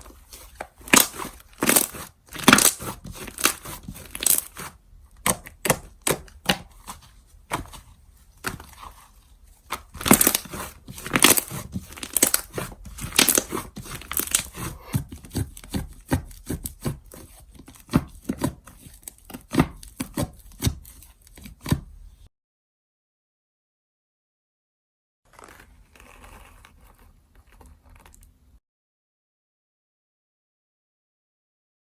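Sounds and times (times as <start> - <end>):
slime squishing and popping: 0.8 - 6.9, 9.9 - 14.5.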